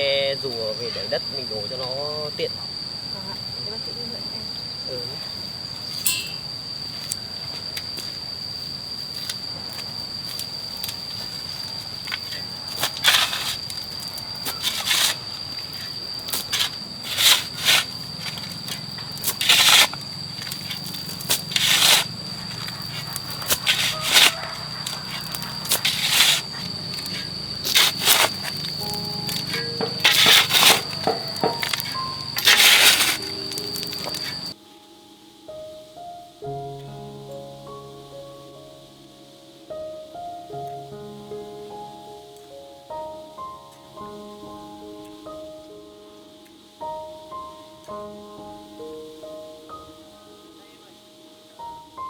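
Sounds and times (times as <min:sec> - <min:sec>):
high insect drone: 0:00.0 - 0:52.0
shovel scraping earth and gravel: 0:12.2 - 0:13.8, 0:14.5 - 0:34.6.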